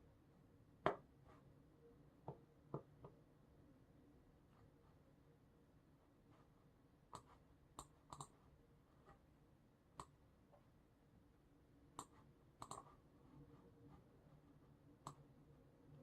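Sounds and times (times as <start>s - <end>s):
mouse and keyboard clicks: 7.1s - 8.4s, 12.0s - 12.9s.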